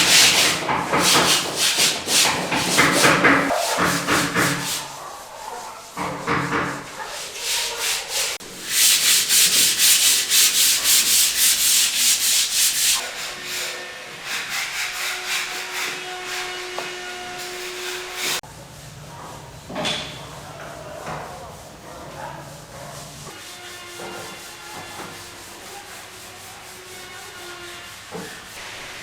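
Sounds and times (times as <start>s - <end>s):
rough scraping strokes: 0.0s - 18.4s.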